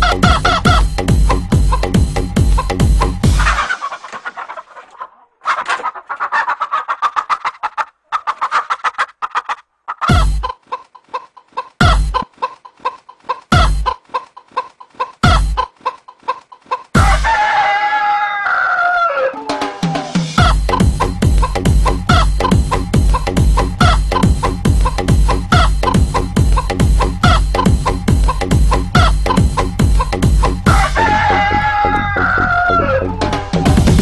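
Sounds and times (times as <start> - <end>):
hen clucking: 0.0 - 33.8
rooster crowing: 17.0 - 20.6, 30.7 - 33.5.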